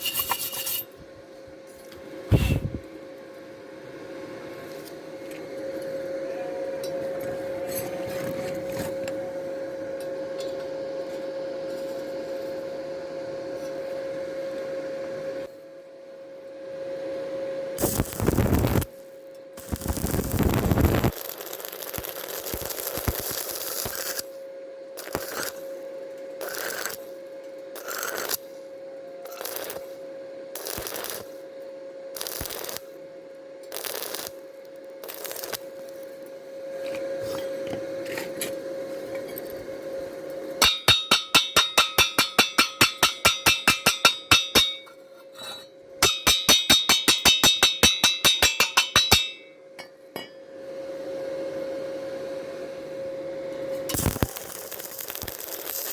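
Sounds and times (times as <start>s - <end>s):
scraping strokes on steel: 0.0s - 1.0s, 40.6s - 50.3s
steady hum: 0.0s - 55.9s.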